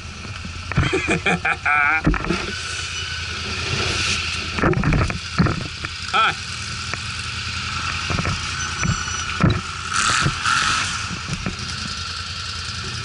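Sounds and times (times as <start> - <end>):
atv engine running: 0.0 - 13.0
knocks and rattles: 2.0 - 2.6, 4.5 - 6.0, 7.8 - 12.1.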